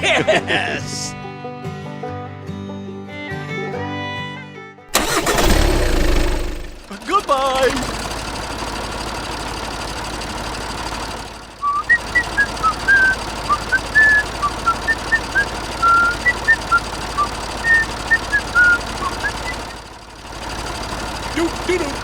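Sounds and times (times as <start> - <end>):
steady engine hum: 4.9 - 22.0
person whistling a tune: 11.6 - 19.6.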